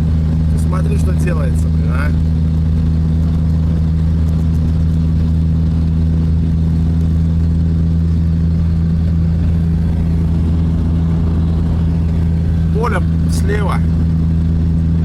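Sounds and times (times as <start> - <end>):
car engine droning: 0.0 - 15.0
road and wind noise: 0.0 - 15.0.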